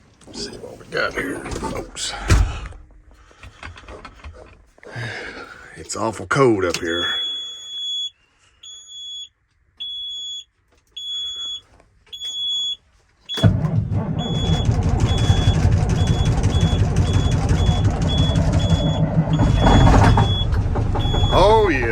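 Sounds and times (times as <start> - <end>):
diesel engine running: 13.4 - 21.9
warning buzzer beeping: 14.3 - 21.9.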